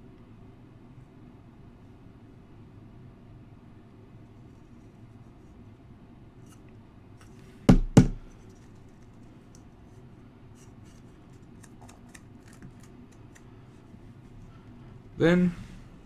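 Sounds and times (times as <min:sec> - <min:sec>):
light ticks and scrapes of parts: 0:04.3 - 0:05.8, 0:06.4 - 0:07.6, 0:08.3 - 0:14.8
plastic parts snapping together: 0:11.5 - 0:13.5.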